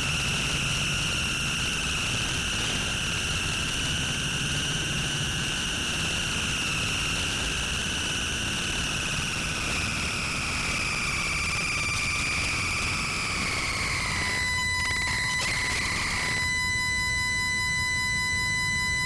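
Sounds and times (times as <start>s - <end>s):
high-pitched electronic drone: 8.0s - 19.0s.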